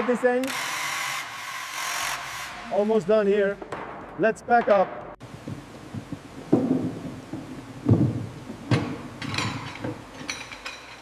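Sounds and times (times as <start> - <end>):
dull knocks and thuds: 3.6 - 10.1
metallic clanks and clinks: 8.8 - 11.0.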